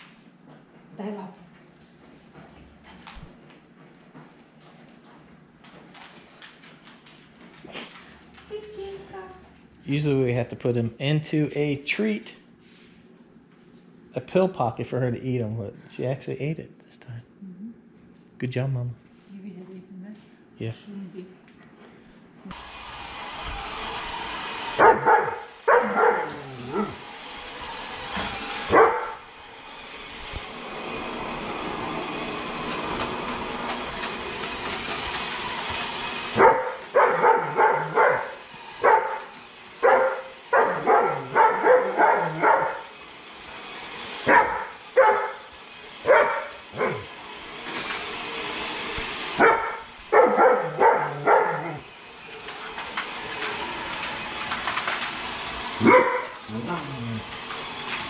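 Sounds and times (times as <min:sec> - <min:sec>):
robot vacuum motor and brushes: 0:22.5 - 0:58.0
dog barking: 0:24.8 - 0:27.0, 0:28.7 - 0:29.2, 0:36.4 - 0:42.8, 0:44.2 - 0:45.4, 0:46.0 - 0:47.1, 0:49.4 - 0:51.8, 0:55.8 - 0:56.9.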